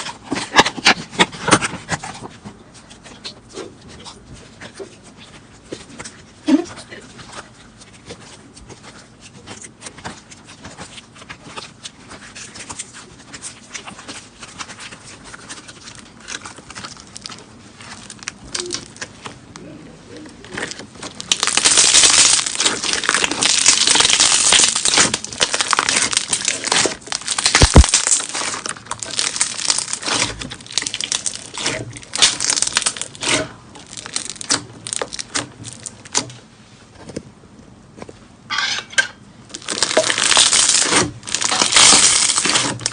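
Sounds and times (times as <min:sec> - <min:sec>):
slime squeezed by hand crackling: 0:15.4 - 0:19.3, 0:20.4 - 0:36.3, 0:39.5 - 0:42.9.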